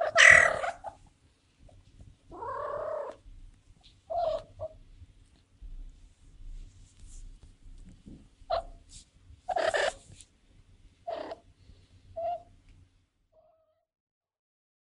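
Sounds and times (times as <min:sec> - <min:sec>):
cat calling: 0:00.0 - 0:01.0, 0:02.3 - 0:03.2, 0:04.1 - 0:04.8, 0:09.5 - 0:10.0, 0:11.1 - 0:11.4.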